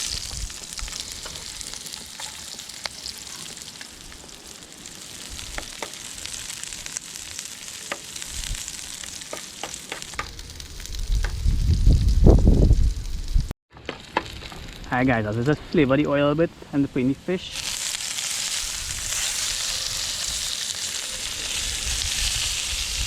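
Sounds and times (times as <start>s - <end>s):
seasonings sizzling in hot oil: 0.0s - 11.0s, 17.4s - 23.0s
oil crackling pops: 0.0s - 12.2s, 12.8s - 14.9s.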